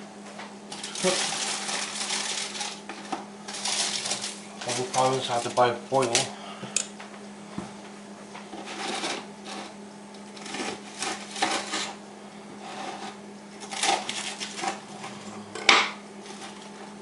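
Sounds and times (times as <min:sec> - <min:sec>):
steady low hum: 0:00.0 - 0:17.0
rustling and clattering handling: 0:00.7 - 0:06.3.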